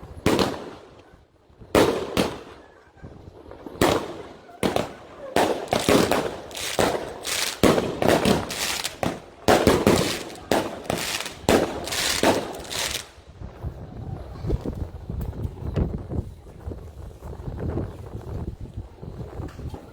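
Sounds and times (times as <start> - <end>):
fireworks bangs: 3.9 - 13.2.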